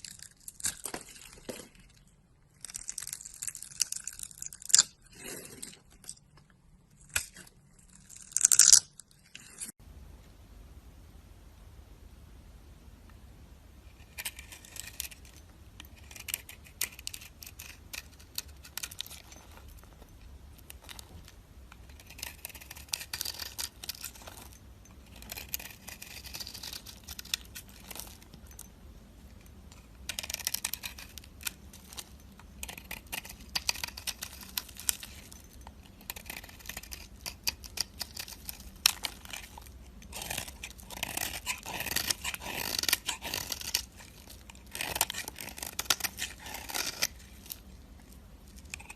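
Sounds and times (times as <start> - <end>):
knife cutting dry soap: 29.8 - 48.9.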